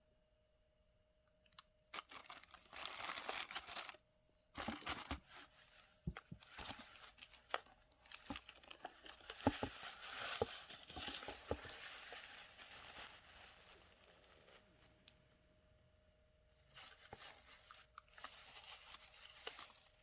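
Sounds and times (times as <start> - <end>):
packaging crinkling: 1.9 - 4.0, 4.6 - 15.2, 16.7 - 20.0.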